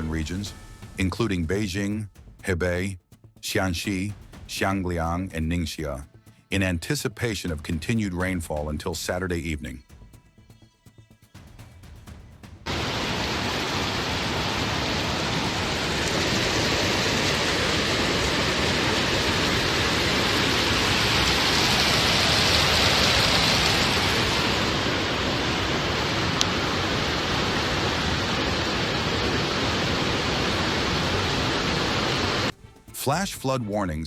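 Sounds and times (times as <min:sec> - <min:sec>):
flood water rushing: 0:12.7 - 0:33.2.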